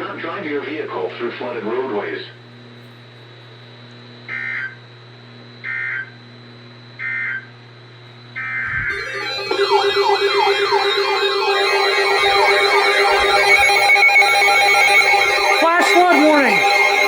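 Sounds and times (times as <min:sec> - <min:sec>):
data tone bursts: 0:08.4 - 0:17.0
warbling alert tones: 0:08.8 - 0:17.0
steady alert tone: 0:08.9 - 0:17.0.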